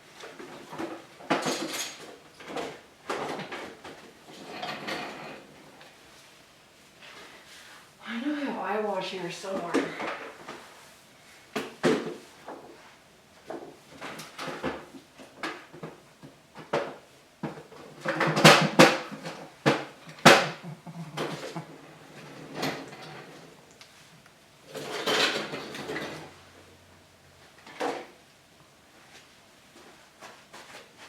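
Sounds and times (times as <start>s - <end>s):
knocks and clatters of rummaging: 0.1s - 5.7s, 11.6s - 12.8s, 13.4s - 23.4s, 24.7s - 26.4s.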